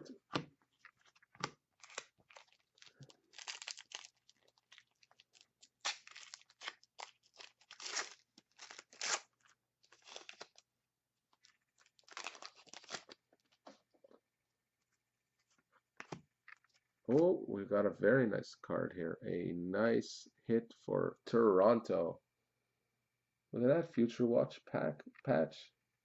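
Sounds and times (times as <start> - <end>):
foil wrapper crinkling and tearing: 0.7 - 10.6, 11.3 - 13.6.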